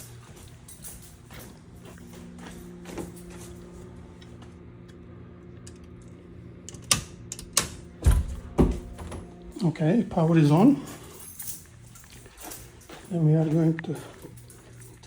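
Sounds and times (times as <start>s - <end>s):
steady low hum: 0.0s - 15.0s
circuit breaker clicks and knocks: 6.7s - 9.3s.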